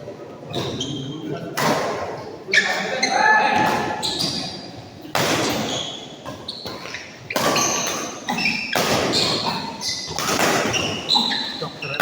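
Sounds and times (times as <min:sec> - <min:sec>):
shoes squeaking on court: 0:00.5 - 0:01.3, 0:02.5 - 0:04.8, 0:05.4 - 0:12.0
racket striking shuttlecock: 0:06.9 - 0:09.4, 0:10.1 - 0:10.9.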